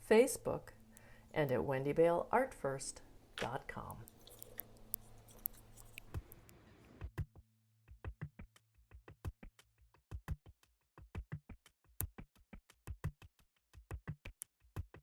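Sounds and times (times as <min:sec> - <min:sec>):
sparse electronic music with crisp beats: 0:08.0 - 0:15.0.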